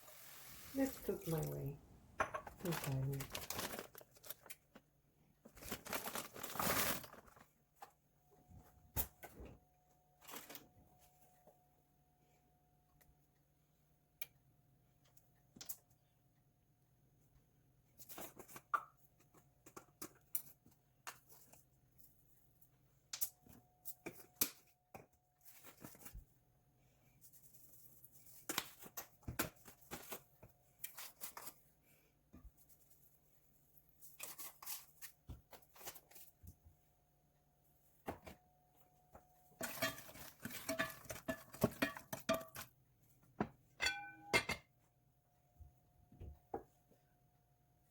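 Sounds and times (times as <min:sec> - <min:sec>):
rustling and tearing: 0:02.6 - 0:04.8, 0:05.5 - 0:07.6.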